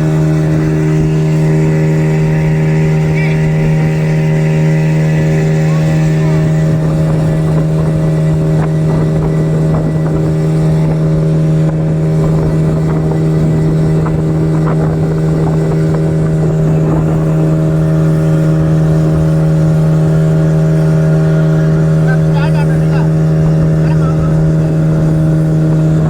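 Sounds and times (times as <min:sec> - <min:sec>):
rushing water: 0:00.0 - 0:26.0
speedboat engine drone: 0:00.0 - 0:26.0
wind noise: 0:05.8 - 0:26.0.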